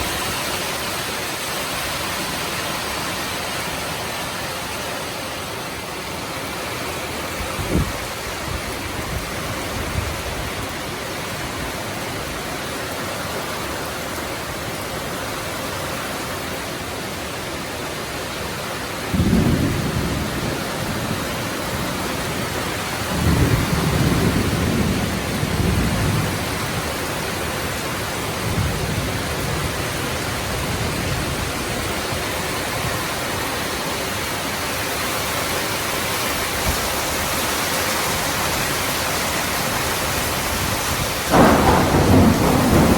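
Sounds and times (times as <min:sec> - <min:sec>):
heavy rain pouring: 0:00.0 - 0:42.9
thunder rolling: 0:19.1 - 0:31.8, 0:40.2 - 0:42.9.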